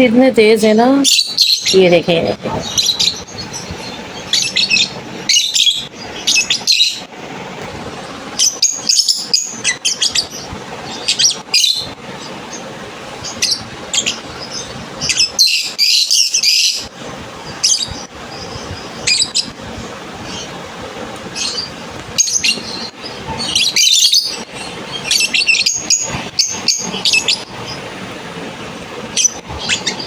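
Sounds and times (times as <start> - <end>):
lovebirds chirping: 0.0 - 7.1, 8.0 - 20.6, 21.2 - 28.0, 28.7 - 30.0
recorded bird calls from phone: 0.0 - 7.1, 8.4 - 11.9, 13.2 - 16.9, 21.4 - 27.8.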